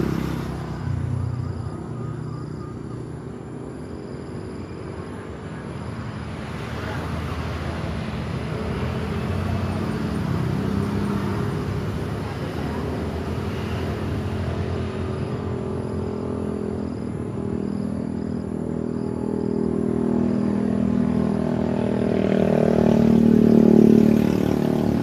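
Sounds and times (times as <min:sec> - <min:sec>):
motor vehicles running: 0:00.0 - 0:25.0.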